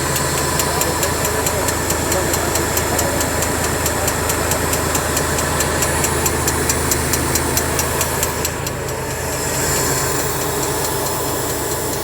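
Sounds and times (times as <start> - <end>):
fast regular ticking: 0.0 - 12.0
tractor engine droning: 0.0 - 12.0.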